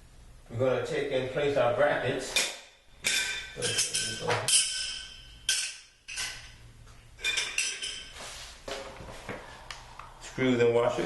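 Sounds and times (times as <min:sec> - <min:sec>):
metal hardware clinking: 0:03.0 - 0:06.5.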